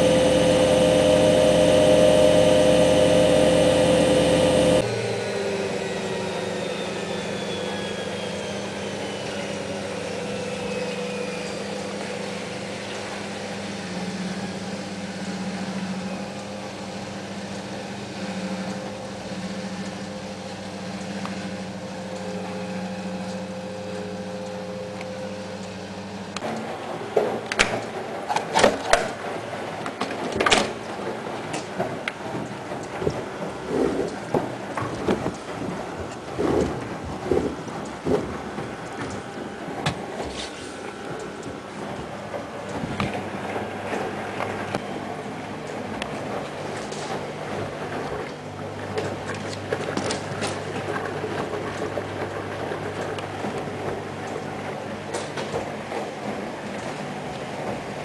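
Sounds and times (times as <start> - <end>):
drum whine: 0.0 - 26.4
washing machine motor: 0.0 - 58.0.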